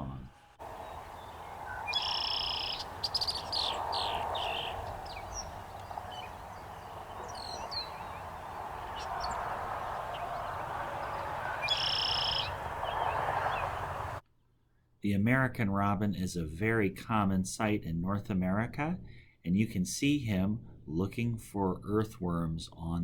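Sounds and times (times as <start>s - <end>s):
background noise: 0.0s - 23.0s
blackbird song with buzzy trill: 0.6s - 14.2s
short bird chirps: 0.8s - 9.4s, 11.1s - 13.6s.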